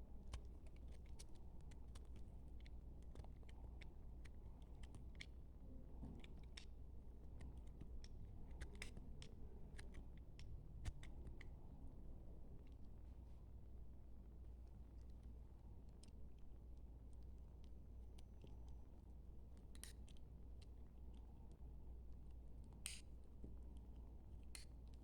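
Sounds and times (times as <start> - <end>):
knife cutting brittle soap: 22.3 - 23.1.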